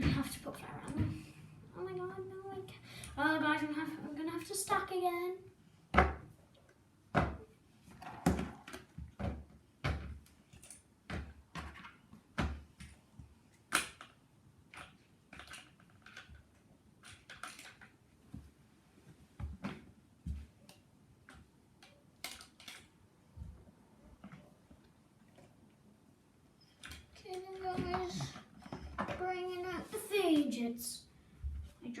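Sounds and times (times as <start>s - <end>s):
small toys tapping and knocking: 8.0s - 13.0s, 13.7s - 18.0s, 19.4s - 22.9s, 26.8s - 30.6s.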